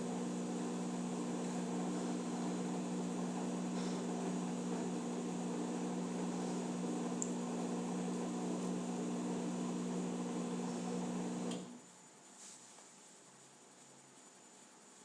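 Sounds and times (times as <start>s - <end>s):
washing machine motor hum: 0.0s - 11.8s.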